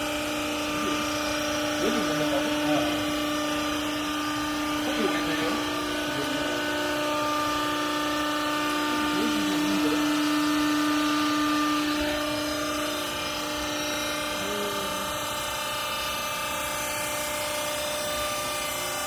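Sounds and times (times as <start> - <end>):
hydraulic pump motor whine: 0.0 - 19.0.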